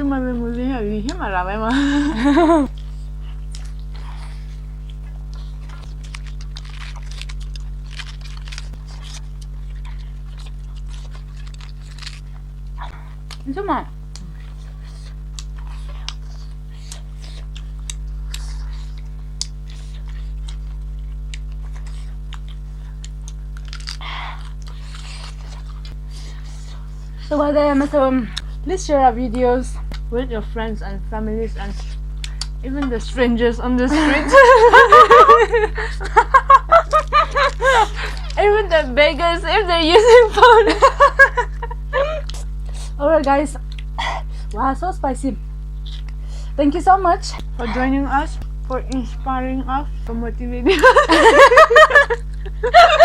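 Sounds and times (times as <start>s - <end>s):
electrical hum: 0.0s - 53.0s
chewing and mouth clicks: 2.7s - 27.3s, 29.3s - 30.1s, 31.6s - 32.6s, 42.2s - 44.6s, 45.8s - 46.2s.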